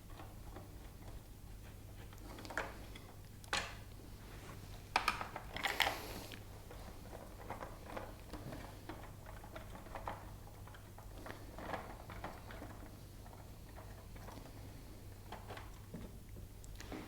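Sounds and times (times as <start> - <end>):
plastic parts clicking and rattling: 4.9 - 6.0, 7.0 - 14.5.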